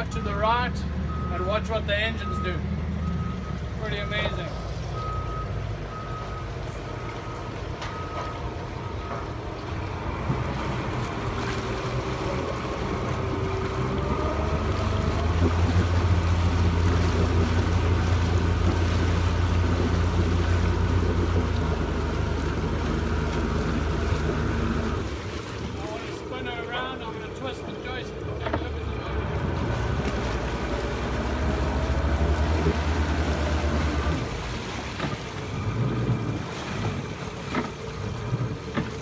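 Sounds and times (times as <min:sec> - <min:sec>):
outboard motors humming: 0:00.0 - 0:39.0
short beeps: 0:02.1 - 0:09.2.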